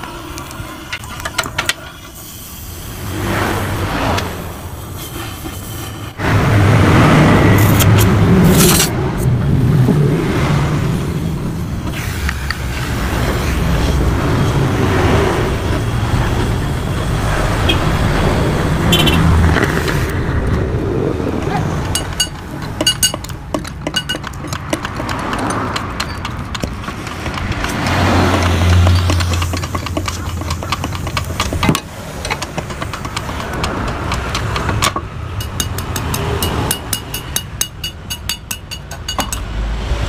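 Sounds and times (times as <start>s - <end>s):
motorcycle engine running: 21.4s - 39.4s.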